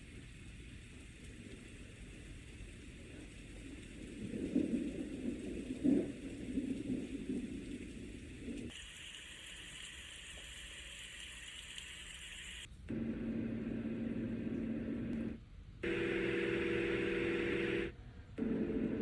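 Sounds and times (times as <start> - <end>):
steady high hiss: 8.2 - 19.0.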